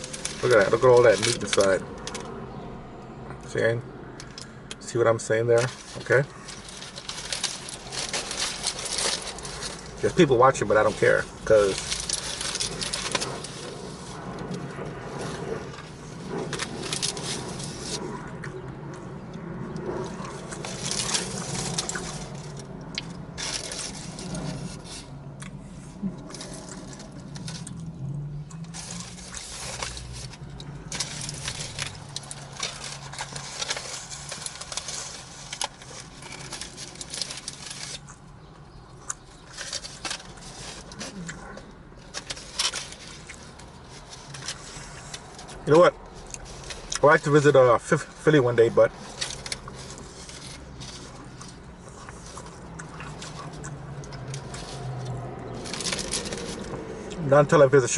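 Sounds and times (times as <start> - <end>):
steady low hum: 0.0 - 57.9
person chewing sandwich: 5.6 - 10.1, 11.2 - 47.0, 48.9 - 57.2.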